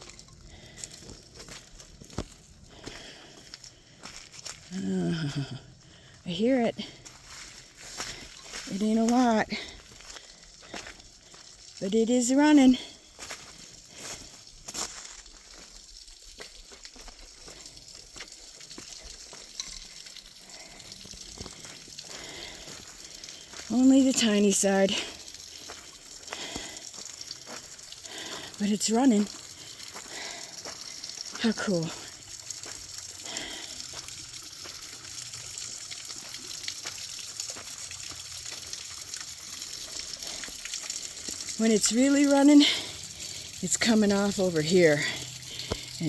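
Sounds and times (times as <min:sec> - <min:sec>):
water dripping: 0:00.0 - 0:46.0
small waterfall splashing: 0:06.8 - 0:46.0.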